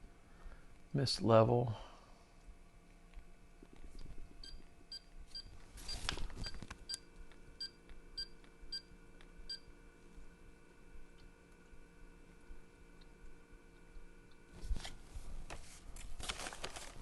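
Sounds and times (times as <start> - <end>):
rustle of handling: 14.5 - 17.0.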